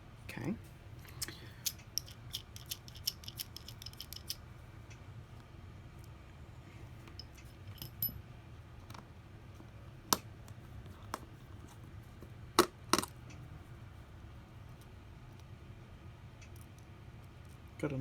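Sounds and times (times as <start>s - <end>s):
faint low hum: 0.0s - 18.0s
small metal tools clicking: 1.2s - 4.4s.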